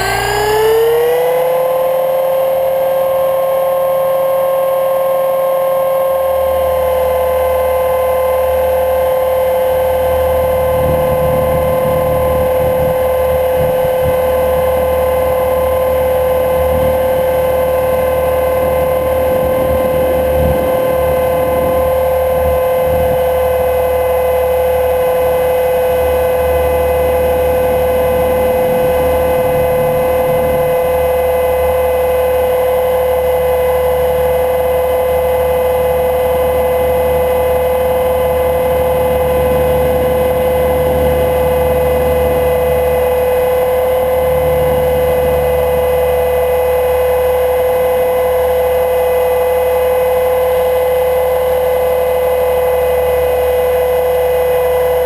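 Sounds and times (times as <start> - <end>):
rc helicopter motor whine: 0.0 - 3.8.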